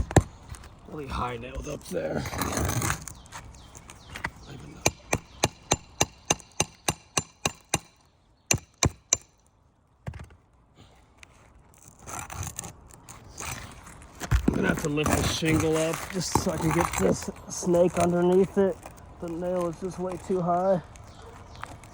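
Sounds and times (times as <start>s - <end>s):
tool scraping: 1.6s - 7.8s, 11.3s - 20.6s.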